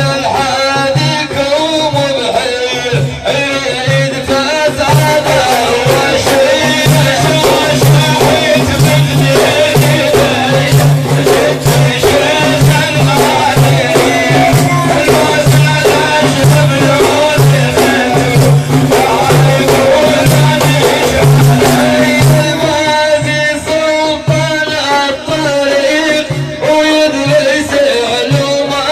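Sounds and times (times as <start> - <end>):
frame drums beating: 0.0 - 28.9
voices chanting: 4.5 - 24.2.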